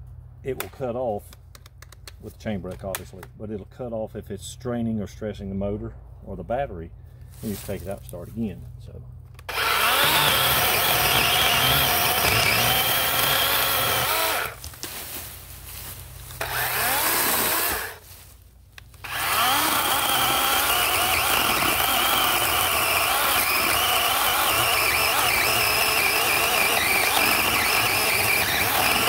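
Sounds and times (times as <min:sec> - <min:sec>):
electric chainsaw cutting: 0:09.4 - 0:14.6, 0:16.4 - 0:18.0, 0:19.0 - 0:29.0.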